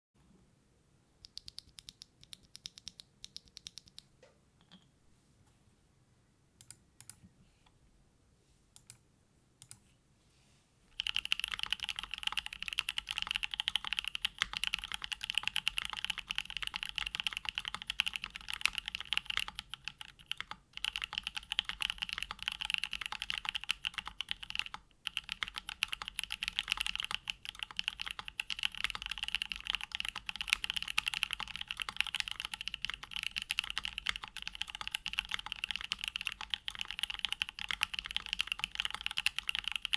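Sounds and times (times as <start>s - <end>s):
typing on mechanical keyboard: 1.2s - 4.1s, 11.0s - 39.9s.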